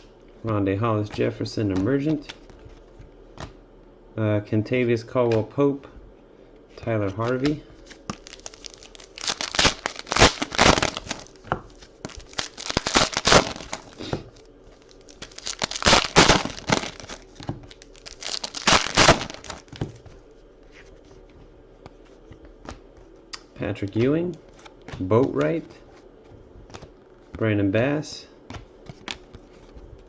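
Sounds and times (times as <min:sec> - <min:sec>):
wrappers tearing and crinkling: 0:07.2 - 0:19.8.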